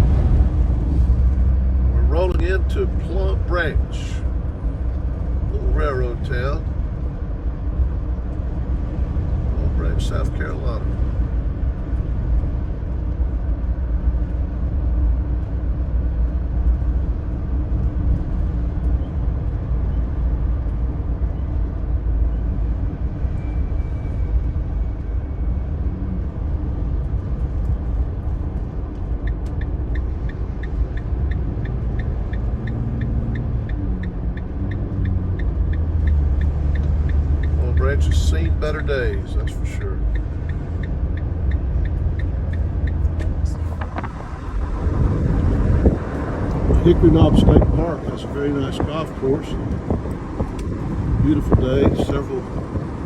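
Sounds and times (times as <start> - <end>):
van road and engine rumble: 0.0 - 53.0
regular ticking: 26.9 - 47.1.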